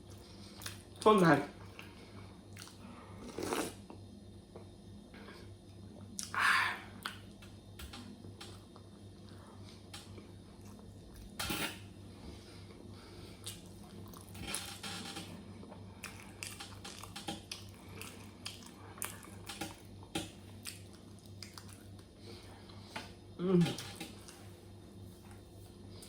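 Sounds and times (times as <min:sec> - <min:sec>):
steady low hum: 0:00.0 - 0:26.0
chewing: 0:02.5 - 0:04.0, 0:13.4 - 0:14.4, 0:15.6 - 0:22.1.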